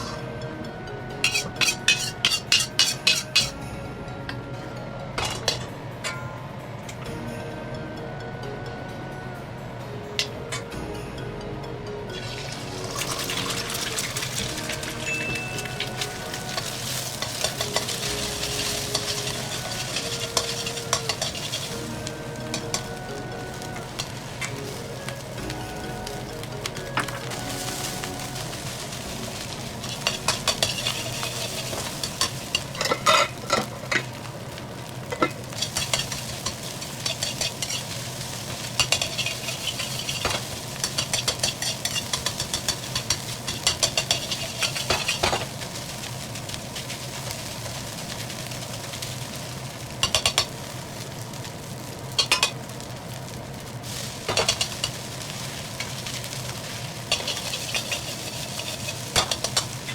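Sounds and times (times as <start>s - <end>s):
metal spatula scraping wok: 0.0s - 0.2s, 1.2s - 3.6s, 12.8s - 49.0s, 53.2s - 59.9s
food sizzling: 0.0s - 3.6s, 12.1s - 59.9s.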